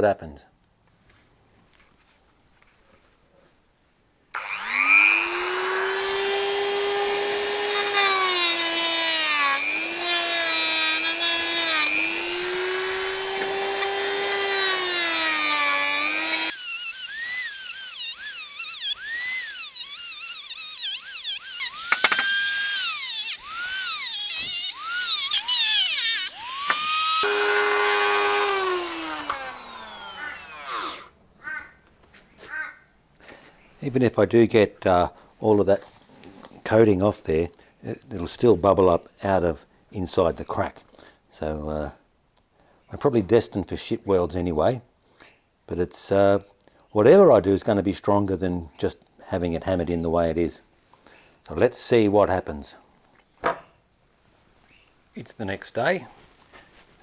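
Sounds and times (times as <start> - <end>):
angle grinder grinding metal: 4.4 - 31.1.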